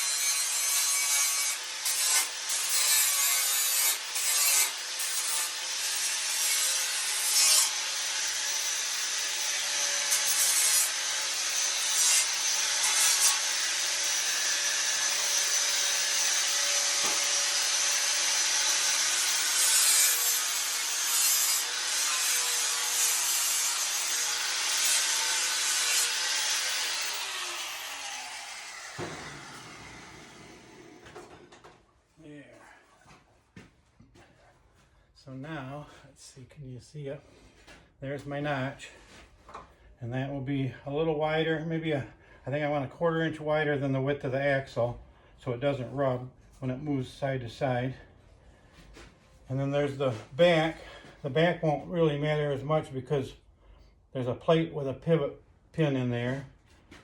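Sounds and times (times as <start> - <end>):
power grinder rasping on steel: 0.0 - 31.5.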